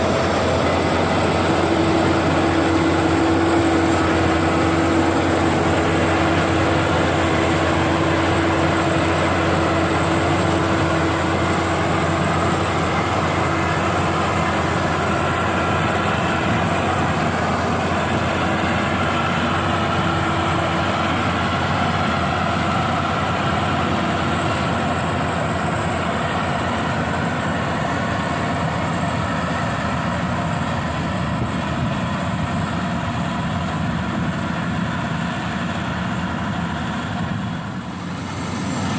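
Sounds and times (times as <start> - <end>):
combine harvester running: 0.0 - 38.9
steady high whine: 0.0 - 38.9.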